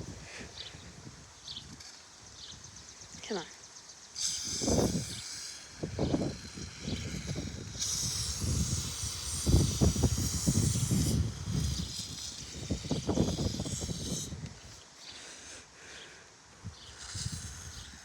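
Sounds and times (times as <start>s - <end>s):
aerosol can spraying: 6.8s - 14.7s.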